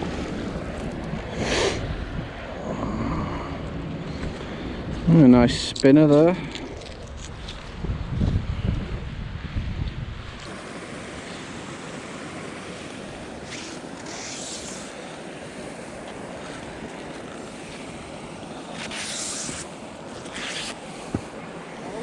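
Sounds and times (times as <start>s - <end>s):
hissing wind gusts: 0.0s - 22.0s
wind rushing over microphone: 0.0s - 22.0s.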